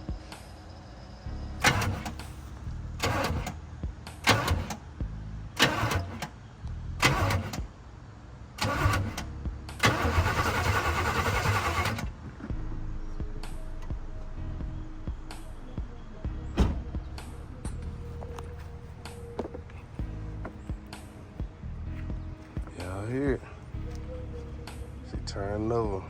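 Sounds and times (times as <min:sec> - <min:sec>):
starter cranking car engine: 0:01.6 - 0:03.6, 0:04.2 - 0:04.9, 0:05.5 - 0:06.4, 0:07.0 - 0:07.7, 0:08.6 - 0:12.2.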